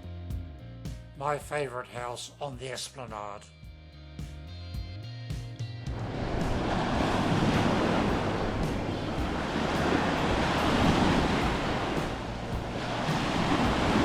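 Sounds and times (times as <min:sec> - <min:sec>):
waves washing onto beach: 0:05.9 - 0:14.0
wind buffeting microphone: 0:05.9 - 0:14.0.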